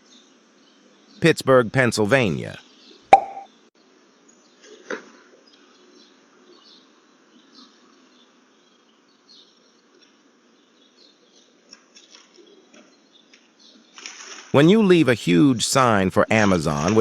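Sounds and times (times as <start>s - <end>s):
faint outdoor background: 0.0s - 17.0s
faint high chirps: 2.4s - 3.5s
sharp knock: 3.2s - 3.4s.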